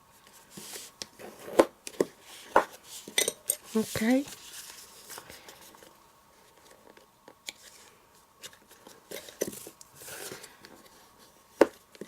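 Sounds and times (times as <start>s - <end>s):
papery rustles: 3.7s - 6.9s.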